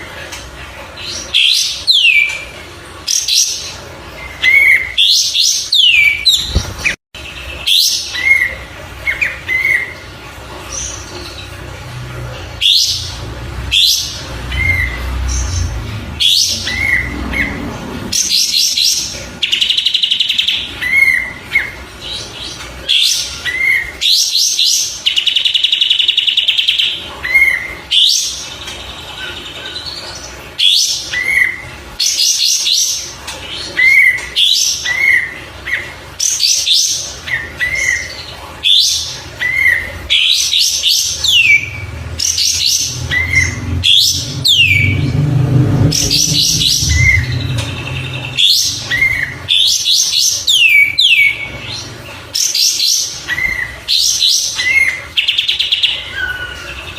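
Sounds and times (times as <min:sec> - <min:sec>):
bird chirping and trilling: 0:00.0 - 0:56.9
low rumble: 0:41.7 - 0:49.4.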